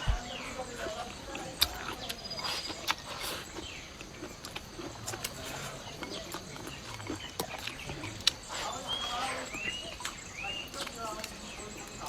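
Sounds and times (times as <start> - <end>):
birds: 0.0 - 12.0
person chewing: 1.6 - 8.6.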